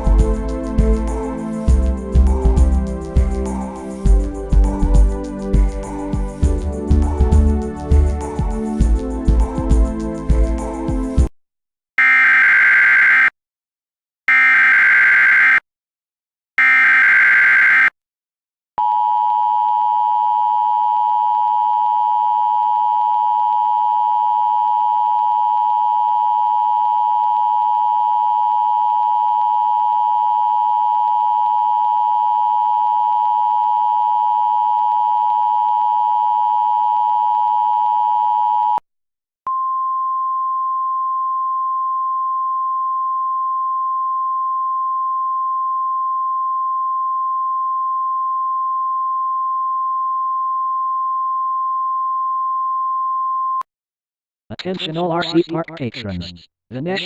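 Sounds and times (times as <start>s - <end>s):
data header bursts: 54.6s - 57.0s.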